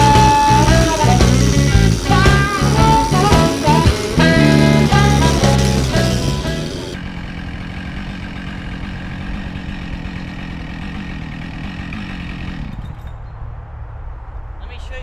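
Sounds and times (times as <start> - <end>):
chainsaw idling: 0.0 - 12.8.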